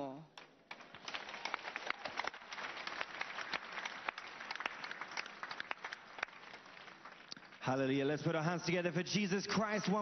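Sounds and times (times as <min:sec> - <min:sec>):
crowd applauding: 0:00.7 - 0:08.0.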